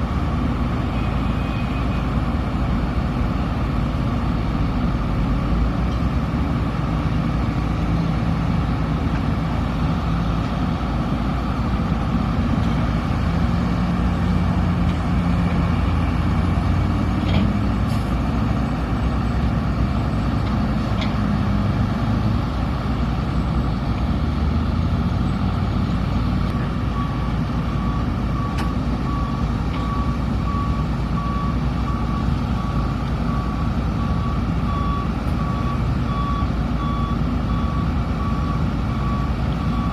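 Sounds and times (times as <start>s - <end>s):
excavator diesel engine working: 0.0s - 39.9s
reversing alarm beeping: 26.9s - 39.9s.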